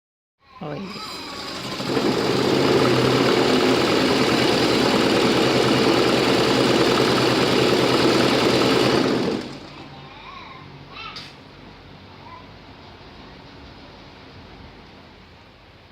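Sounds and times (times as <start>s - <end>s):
sewing machine running: 0.9s - 9.8s.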